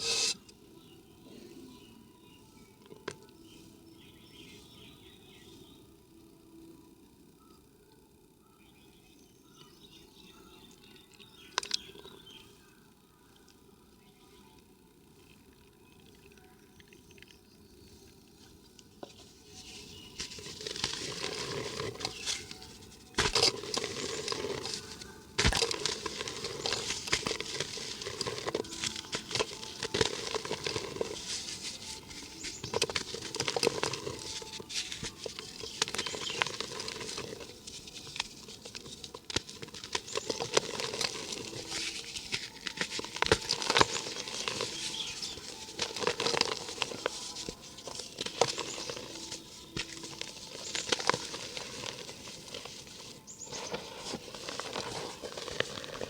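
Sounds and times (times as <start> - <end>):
dry cement crumbling: 19.4 - 56.0.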